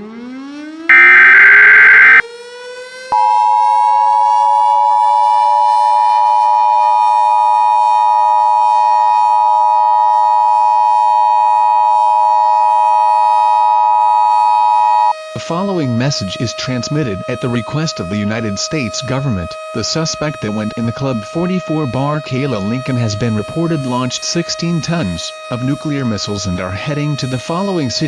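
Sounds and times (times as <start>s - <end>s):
civil defense siren: 0.0s - 15.4s, 19.0s - 23.8s, 24.7s - 26.2s
data burst tones: 0.9s - 2.2s
two-tone attention signal: 0.9s - 2.2s.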